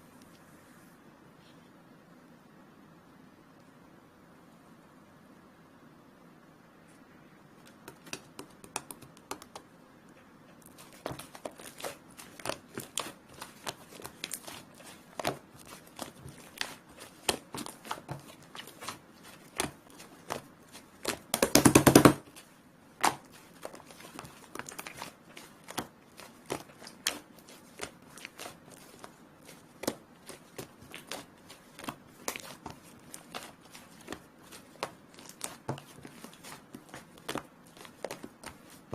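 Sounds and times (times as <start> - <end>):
slime squishing with sticky clicks: 10.6 - 38.9.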